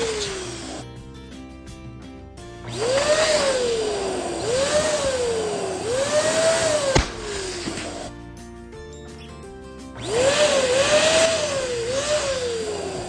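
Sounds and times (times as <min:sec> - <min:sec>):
electric balloon pump running: 0:00.0 - 0:00.8, 0:02.7 - 0:08.1, 0:10.0 - 0:13.0
background music: 0:00.0 - 0:13.0
sharp snap: 0:06.3 - 0:08.2.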